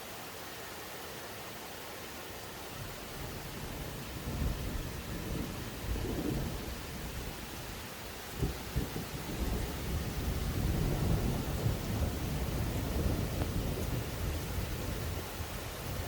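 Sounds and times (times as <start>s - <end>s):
steady rain falling: 0.0s - 16.0s
distant thunder rumble: 3.2s - 16.0s.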